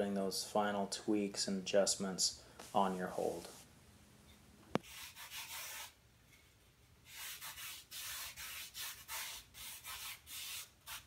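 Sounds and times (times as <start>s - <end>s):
hand sanding foam: 4.8s - 6.0s, 7.0s - 11.0s.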